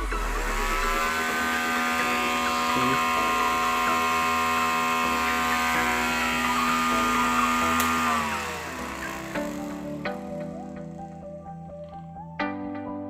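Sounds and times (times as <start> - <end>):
electric motor whining: 0.0 - 11.8
switch click: 7.8 - 8.0.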